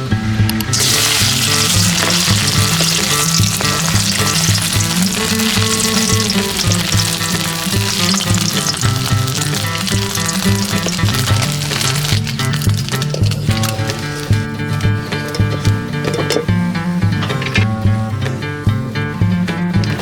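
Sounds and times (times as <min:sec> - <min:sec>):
background music: 0:00.0 - 0:20.0
fish eggs sizzling in frying: 0:00.7 - 0:16.1.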